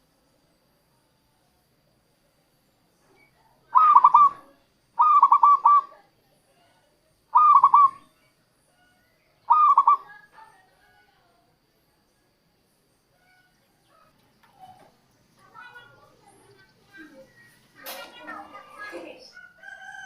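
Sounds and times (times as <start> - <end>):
dove cooing: 3.7 - 5.9, 7.3 - 8.0, 9.5 - 10.1.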